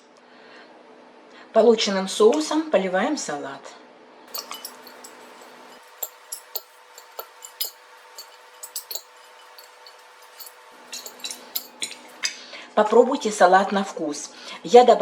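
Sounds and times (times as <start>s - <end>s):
tableware clinking on bowl: 4.3s - 12.2s.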